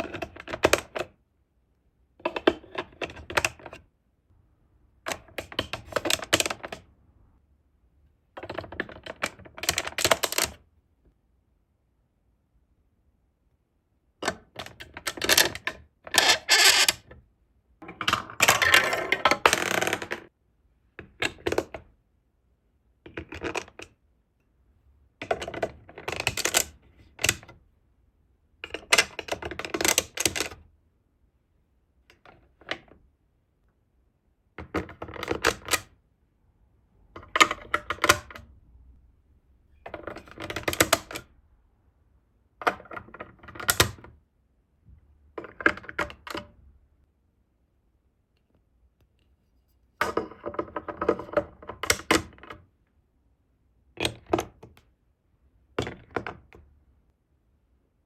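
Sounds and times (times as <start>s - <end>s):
marbles rattling through plastic track: 16.2s - 17.0s.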